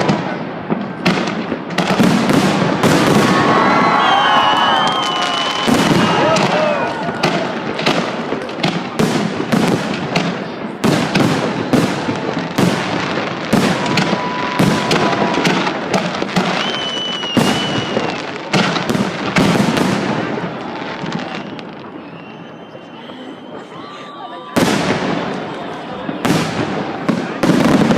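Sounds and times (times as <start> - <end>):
fireworks bangs and crackling: 0.0 - 27.9.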